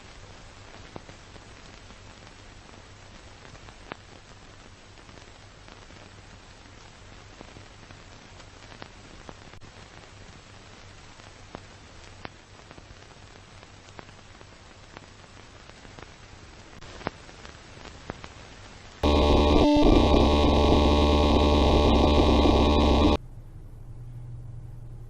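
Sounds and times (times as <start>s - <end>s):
crackles and pops: 0.0s - 23.2s
tape hiss: 0.0s - 25.0s
low hum: 19.0s - 25.0s.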